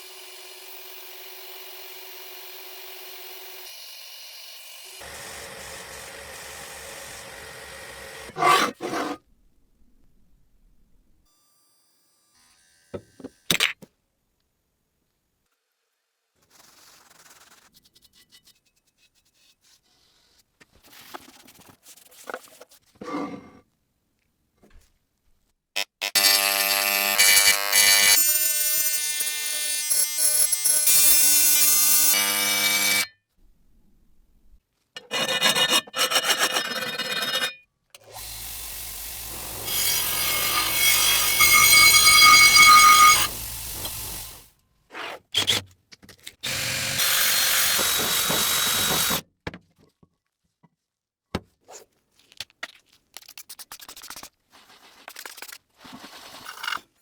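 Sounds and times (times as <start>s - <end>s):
scraping and rubbing: 8.4s - 9.2s, 35.0s - 37.6s, 51.8s - 57.0s
power tool whining: 38.1s - 44.4s, 46.4s - 49.2s.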